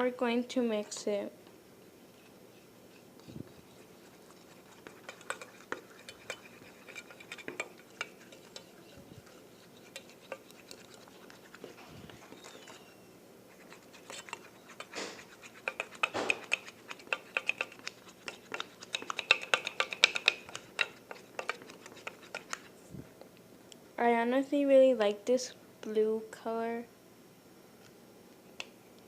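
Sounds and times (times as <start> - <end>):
utensil clinking and scraping pot: 2.2 - 13.0, 13.6 - 22.7.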